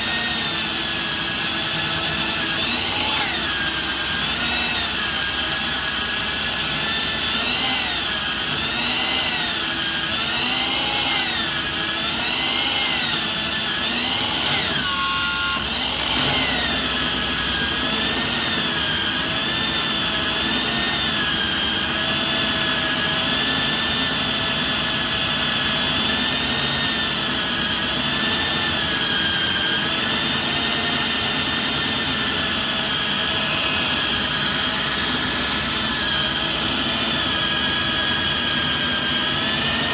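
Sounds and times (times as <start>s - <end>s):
core drill motor running: 0.0s - 39.9s.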